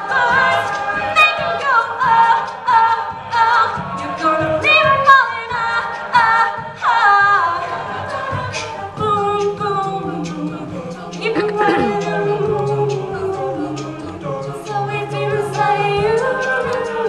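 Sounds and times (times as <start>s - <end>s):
a cappella group singing: 0.0s - 17.0s.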